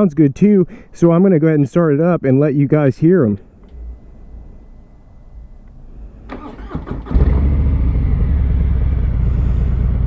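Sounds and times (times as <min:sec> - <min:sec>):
motorcycle engine cranking on starter: 0:06.3 - 0:07.7
motorcycle engine idling: 0:06.6 - 0:10.0.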